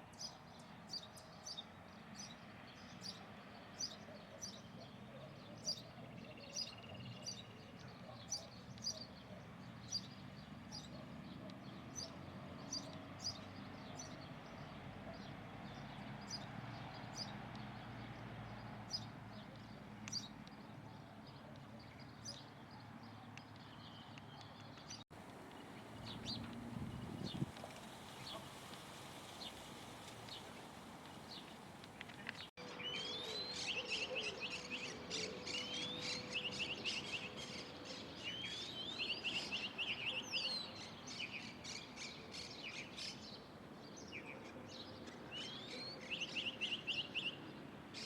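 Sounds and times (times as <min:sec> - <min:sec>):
low outdoor background: 0:00.0 - 0:48.0
bird chirping: 0:31.3 - 0:43.4, 0:44.0 - 0:48.0.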